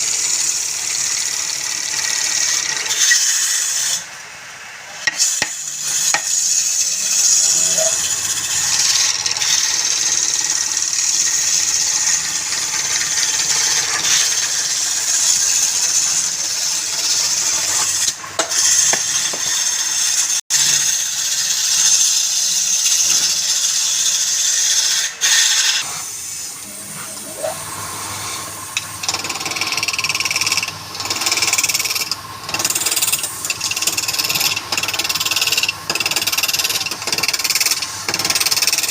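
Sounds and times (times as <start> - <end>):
tool hissing on spinning wood: 0.0 - 38.9
lathe motor hum: 5.8 - 20.2, 26.1 - 38.9.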